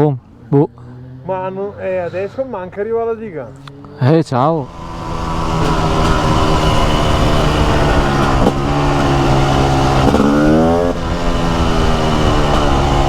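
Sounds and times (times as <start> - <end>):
motorcycle two-stroke engine accelerating: 3.5 - 13.0.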